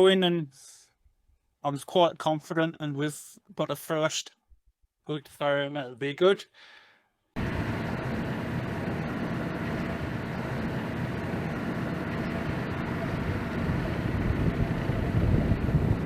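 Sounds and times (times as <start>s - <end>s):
vehicle engine rumbling: 7.4s - 16.0s.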